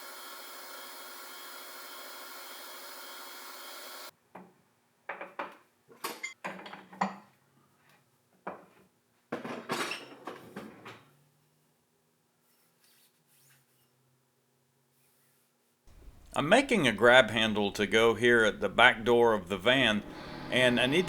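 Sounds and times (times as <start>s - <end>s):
shop machine hissing: 0.0s - 4.1s, 15.9s - 21.0s.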